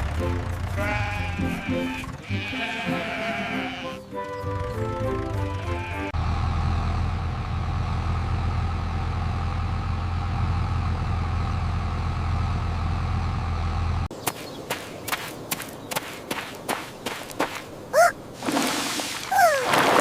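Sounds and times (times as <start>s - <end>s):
tractor engine running: 0.0s - 14.1s.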